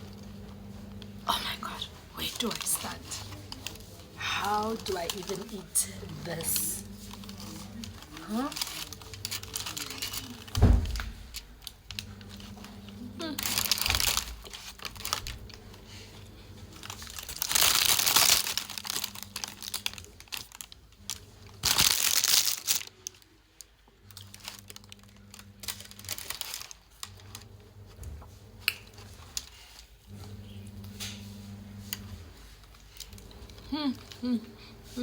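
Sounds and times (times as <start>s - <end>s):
paper wrapping crinkling: 1.7s - 27.5s.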